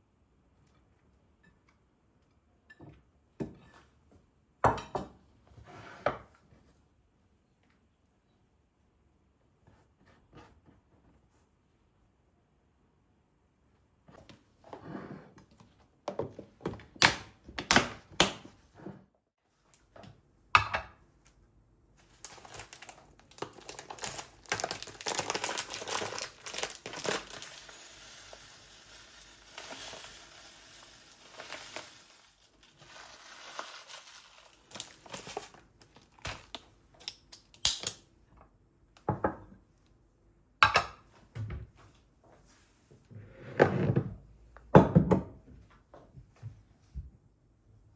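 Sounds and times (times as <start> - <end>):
hands crinkling and rustling: 22.0 - 27.8, 31.3 - 37.4.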